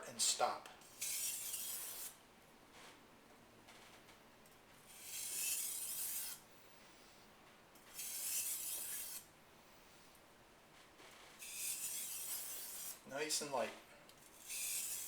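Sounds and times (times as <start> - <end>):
knife scraping on whetstone: 0.9 - 2.2, 4.9 - 6.4, 7.8 - 9.3, 11.4 - 13.0, 14.2 - 15.0.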